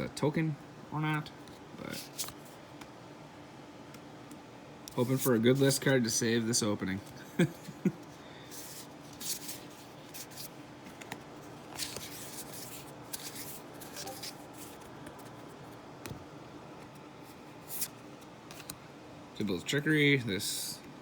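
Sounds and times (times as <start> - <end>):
trading cards rustling and flicking: 1.5 - 2.9, 8.5 - 16.1, 16.8 - 18.8.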